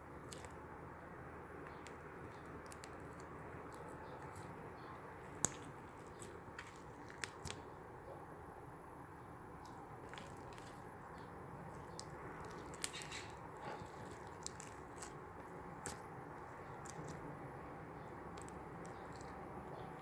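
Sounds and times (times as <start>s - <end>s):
slime squishing: 0.0s - 8.2s, 9.5s - 20.0s
beads clicking and crackling: 1.6s - 7.7s, 9.6s - 17.3s, 18.0s - 20.0s.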